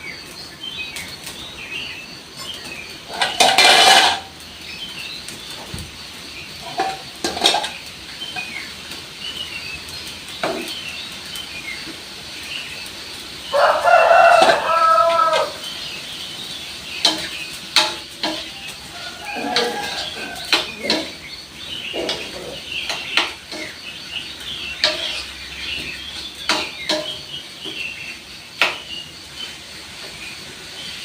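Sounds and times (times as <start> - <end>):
small birds chirping faintly: 0.0 - 31.0
pots and utensils clattering: 2.4 - 4.8, 5.4 - 8.9, 10.3 - 10.8, 14.2 - 15.7, 16.4 - 29.0
rooster crowing: 13.5 - 15.7, 18.4 - 20.8.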